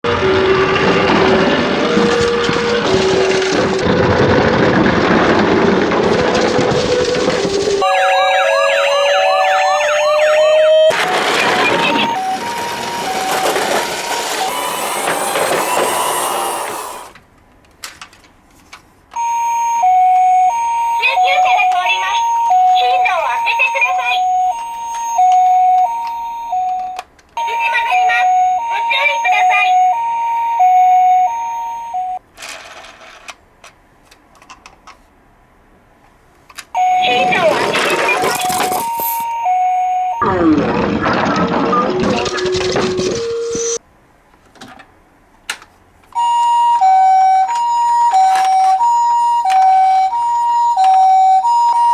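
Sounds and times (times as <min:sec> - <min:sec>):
toy sirens wailing: 0:00.1 - 0:04.6, 0:06.0 - 0:17.2, 0:19.4 - 0:32.1, 0:36.8 - 0:40.6, 0:46.2 - 0:51.9
two-note siren tones: 0:07.8 - 0:17.1.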